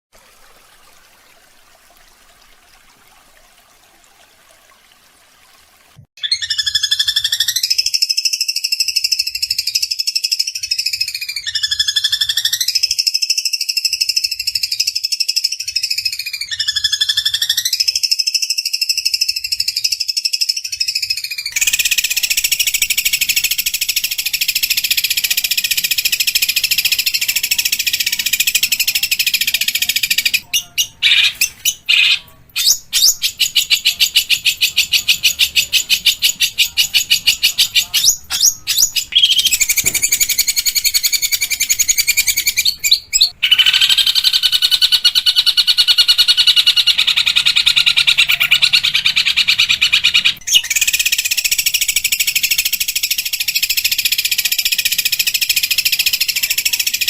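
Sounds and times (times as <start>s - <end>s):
bird giving harsh rasping calls: 28.4s - 51.0s.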